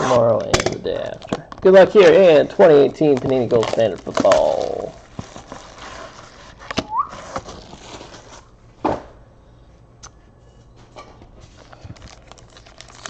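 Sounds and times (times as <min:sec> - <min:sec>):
card packaging handled: 0:00.9 - 0:08.5, 0:11.4 - 0:13.0.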